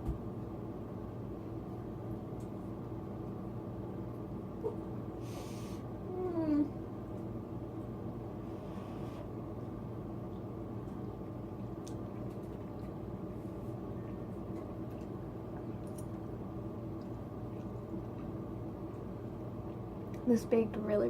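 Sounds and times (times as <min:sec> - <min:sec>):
electric fan humming: 0:00.0 - 0:21.0.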